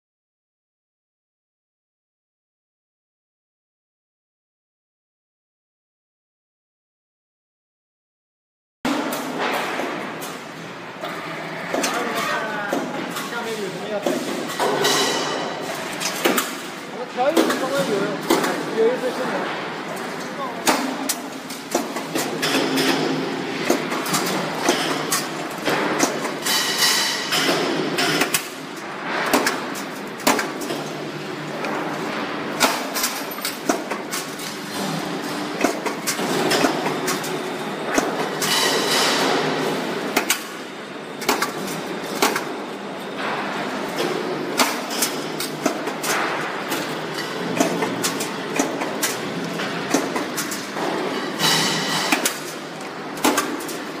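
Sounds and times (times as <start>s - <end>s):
sharp metallic clanks: 51.1s - 52.3s.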